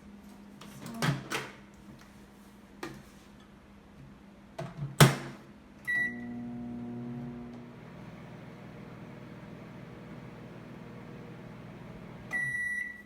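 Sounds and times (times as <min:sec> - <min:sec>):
microwave humming: 0:05.8 - 0:13.0.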